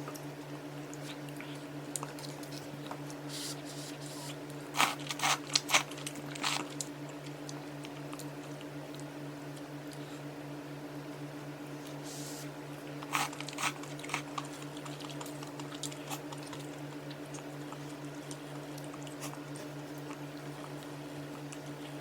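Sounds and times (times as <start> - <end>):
steady low hum: 0.0 - 22.0
sharp eating sounds: 0.9 - 9.0, 13.0 - 22.0
wet chewing: 0.9 - 10.1, 13.0 - 22.0.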